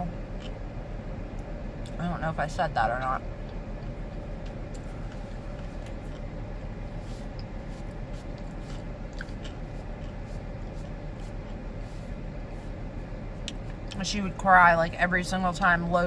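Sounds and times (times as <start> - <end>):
car cabin hum: 0.0 - 16.0
eating noises: 7.0 - 12.0.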